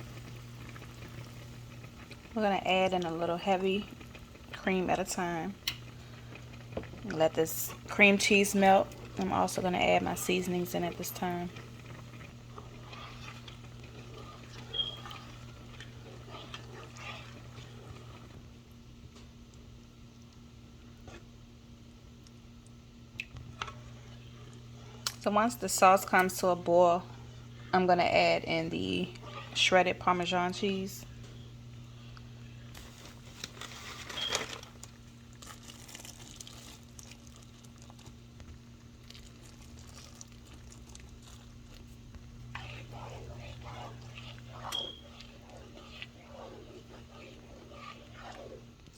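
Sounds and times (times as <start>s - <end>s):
crinkling and crackling: 0.0s - 19.6s, 32.1s - 48.9s
low electrical hum: 0.0s - 48.9s
utensil clicking and scraping: 11.5s - 18.4s, 42.4s - 48.9s
low hum: 41.7s - 48.9s
high squeak: 44.7s - 45.1s.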